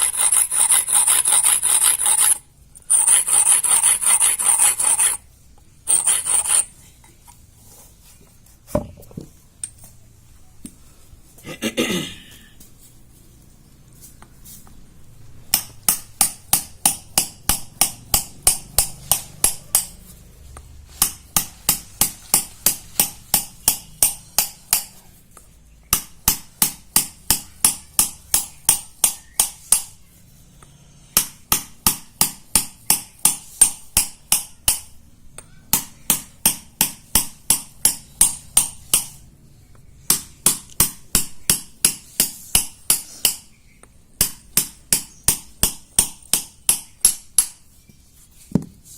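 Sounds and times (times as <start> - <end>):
hammer and chisel striking stone: 0.0 - 5.2, 5.9 - 6.7, 15.5 - 20.0, 20.9 - 25.0, 25.9 - 30.0, 31.1 - 39.2, 40.1 - 47.7.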